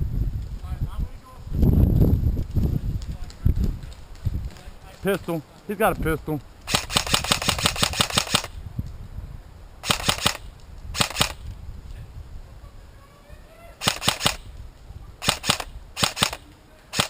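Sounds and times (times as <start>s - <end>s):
airsoft guns firing: 6.7s - 8.6s, 9.8s - 11.4s, 13.8s - 14.5s, 15.2s - 17.0s.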